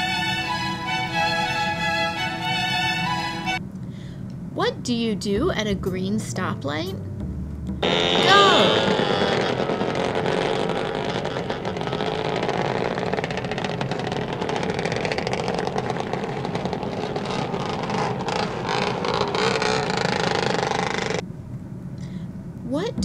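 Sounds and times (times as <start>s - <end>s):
traffic on a road: 0.0s - 3.6s, 7.8s - 21.3s.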